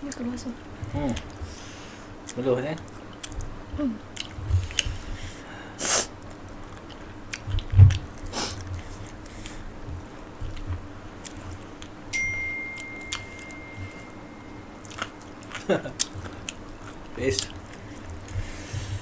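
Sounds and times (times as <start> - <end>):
steady high tone: 12.2 - 16.3.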